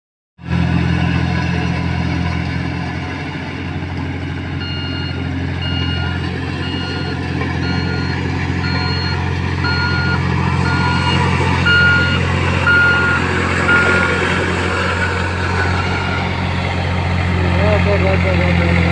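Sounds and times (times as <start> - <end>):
heavy vehicle engine running: 0.4 - 18.9
reversing alarm beeping: 0.9 - 2.0, 4.6 - 16.6.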